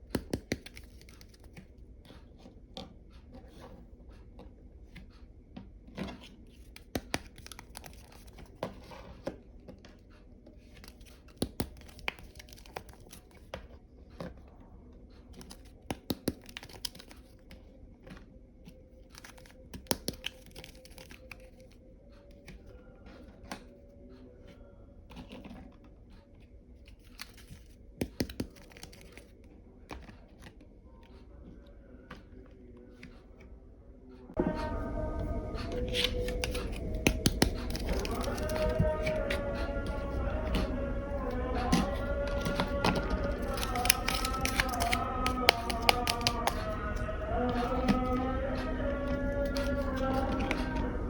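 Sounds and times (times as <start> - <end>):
plastic wrapping crinkling and tearing: 6.7 - 8.6, 10.9 - 13.4, 15.4 - 17.4, 19.0 - 21.7, 27.0 - 29.4, 35.8 - 40.3, 41.3 - 48.2.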